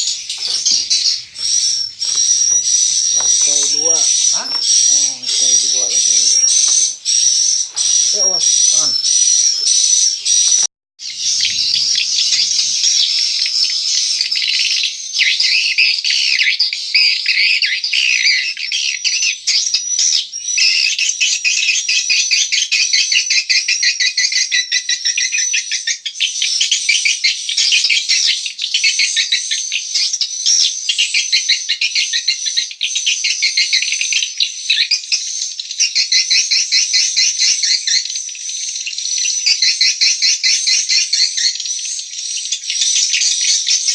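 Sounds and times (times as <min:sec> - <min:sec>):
swiftlets twittering and chirping: 0:00.0 - 0:14.8.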